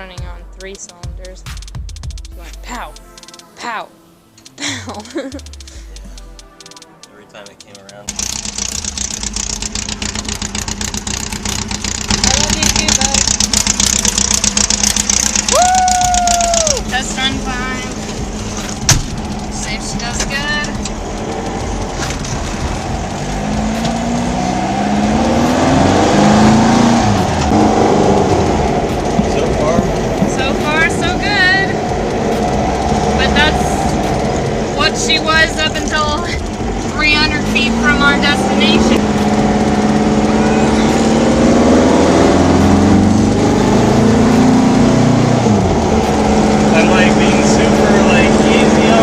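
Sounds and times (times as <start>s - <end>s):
engine pulling under load: 7.4s - 49.0s.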